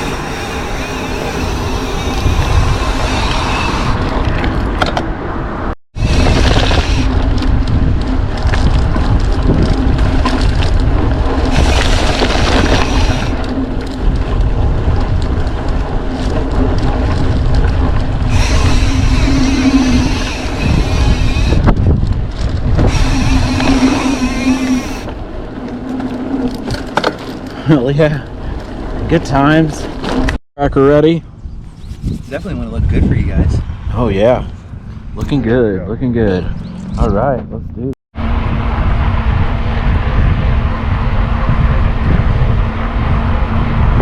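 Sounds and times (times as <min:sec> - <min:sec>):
wind buffeting microphone: 0:00.0 - 0:44.0.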